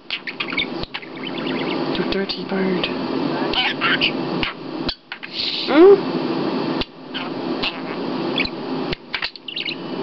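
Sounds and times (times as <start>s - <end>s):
budgerigar chattering: 0.1s - 2.1s, 2.8s - 5.4s, 9.1s - 9.8s.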